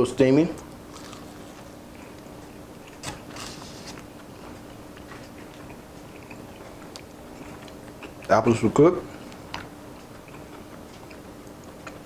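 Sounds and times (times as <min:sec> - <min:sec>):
faint steady hum: 0:00.0 - 0:12.0
biting into pastry: 0:00.9 - 0:02.2
quiet chewing: 0:00.9 - 0:08.3, 0:09.1 - 0:12.0.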